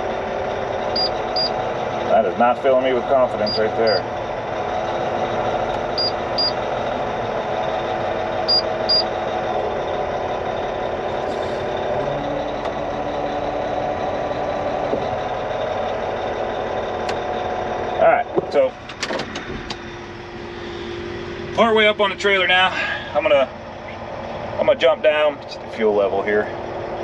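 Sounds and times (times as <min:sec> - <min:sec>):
dump truck diesel engine: 0:00.0 - 0:27.0
short high beeps: 0:06.0 - 0:06.6, 0:08.5 - 0:09.1.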